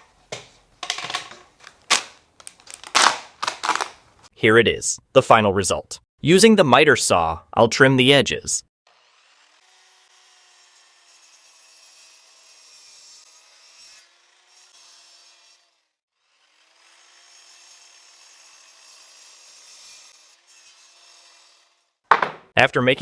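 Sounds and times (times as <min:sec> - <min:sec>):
saw blade cutting wood: 0:08.9 - 0:22.0.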